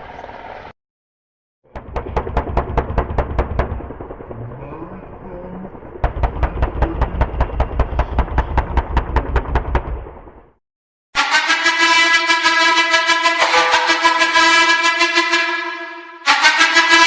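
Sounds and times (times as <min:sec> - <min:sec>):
helicopter low rumble: 0:01.6 - 0:10.6
rapid sharp thumps: 0:01.7 - 0:04.3, 0:05.7 - 0:10.5.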